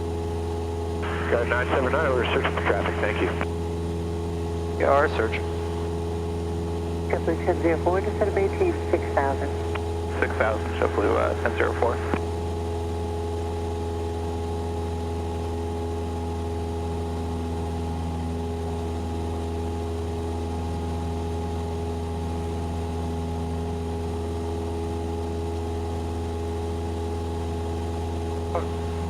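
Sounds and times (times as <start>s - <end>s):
light aircraft engine droning: 0.0s - 29.0s.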